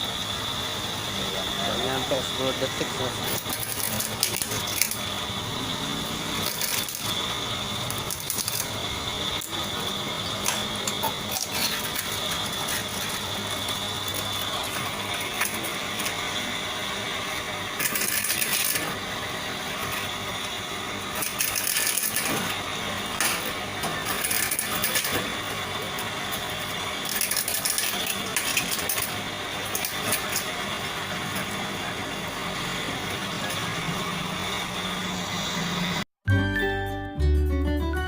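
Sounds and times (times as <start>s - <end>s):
machine motor hum: 0.0s - 36.1s
coconut shell rattling and scraping: 2.6s - 16.5s, 17.4s - 20.3s, 21.0s - 31.9s.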